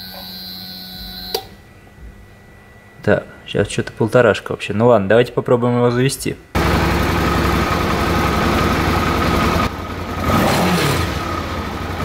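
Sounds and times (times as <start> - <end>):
motorcycle engine running: 6.6 - 12.0.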